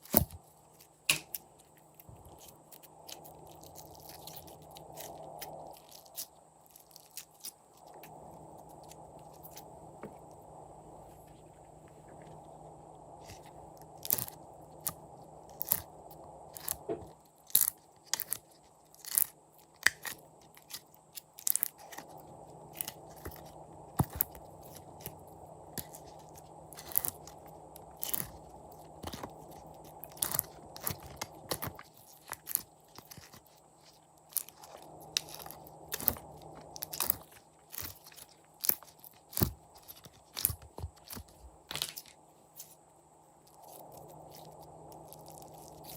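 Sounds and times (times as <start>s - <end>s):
soft rustling: 0.3s - 13.9s.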